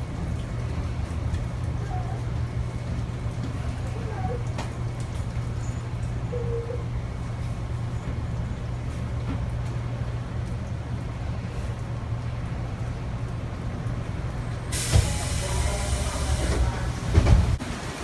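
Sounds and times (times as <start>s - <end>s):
train low hum: 0.0s - 18.0s
compressed air hiss: 14.7s - 16.8s.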